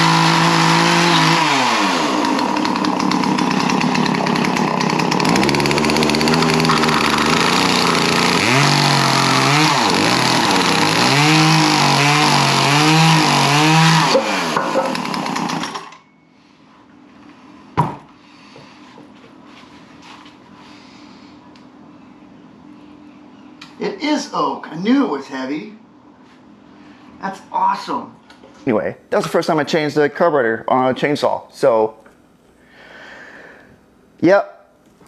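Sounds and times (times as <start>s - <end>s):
chainsaw revving and idling: 0.0s - 16.0s.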